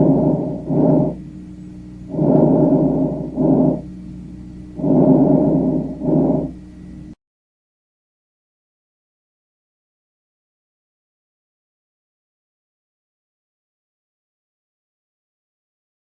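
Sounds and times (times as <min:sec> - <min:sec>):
breathing: 0:00.0 - 0:01.2, 0:02.1 - 0:03.9, 0:04.8 - 0:06.6.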